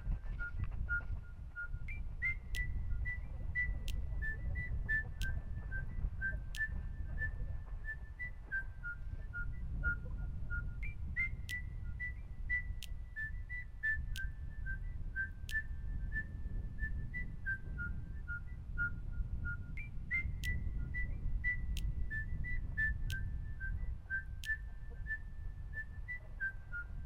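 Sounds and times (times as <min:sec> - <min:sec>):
steady low rumble: 0:00.0 - 0:26.2
whistled tune: 0:00.0 - 0:27.0
light ticks: 0:02.2 - 0:02.8, 0:03.6 - 0:04.2, 0:04.9 - 0:05.4, 0:06.5 - 0:07.8, 0:10.8 - 0:14.4, 0:15.4 - 0:15.7, 0:20.3 - 0:20.9, 0:21.7 - 0:22.1, 0:22.8 - 0:23.3, 0:24.4 - 0:25.0.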